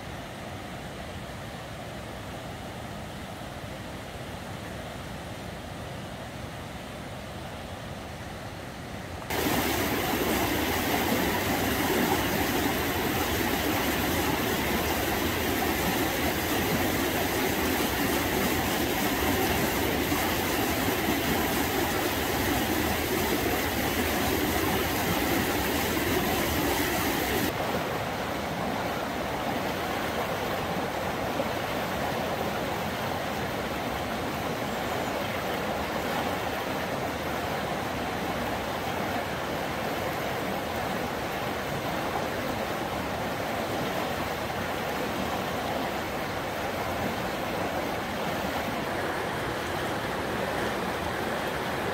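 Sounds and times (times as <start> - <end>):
river rapids rushing: 9.3 - 51.9.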